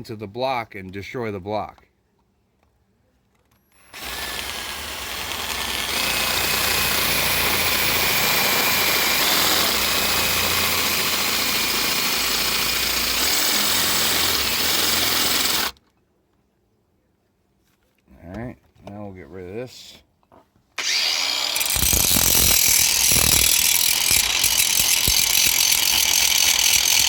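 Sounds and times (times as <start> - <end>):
electric drill cutting metal: 3.8 - 15.8, 20.8 - 27.0.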